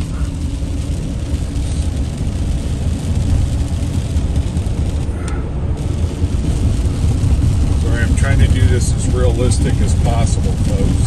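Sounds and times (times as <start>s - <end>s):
car road noise rumble: 0.0s - 11.0s.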